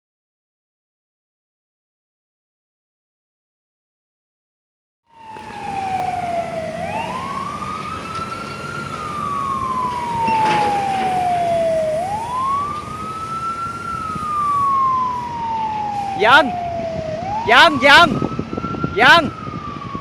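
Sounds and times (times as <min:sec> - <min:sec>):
fire truck siren wailing: 0:05.1 - 0:20.0
vehicle engine and road noise: 0:05.1 - 0:20.0.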